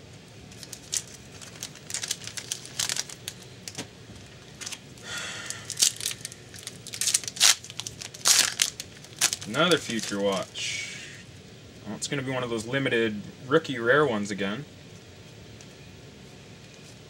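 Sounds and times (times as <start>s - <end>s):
foil wrapper crinkling: 0.4s - 4.8s, 5.4s - 10.6s.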